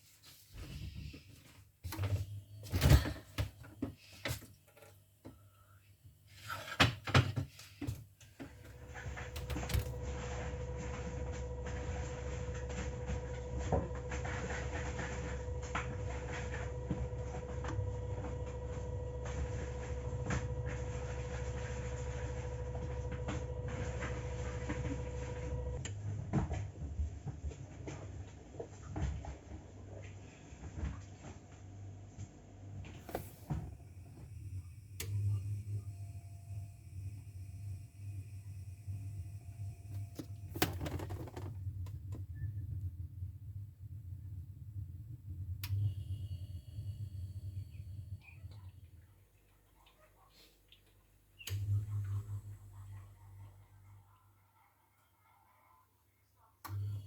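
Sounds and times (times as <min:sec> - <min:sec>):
refrigerator compressor hum: 0:06.4 - 0:28.2, 0:29.2 - 0:49.5, 0:51.3 - 0:54.4.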